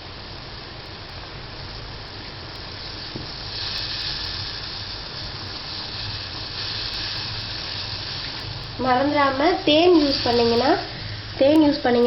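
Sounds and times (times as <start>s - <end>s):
milk hissing in a pan: 0.0s - 12.0s.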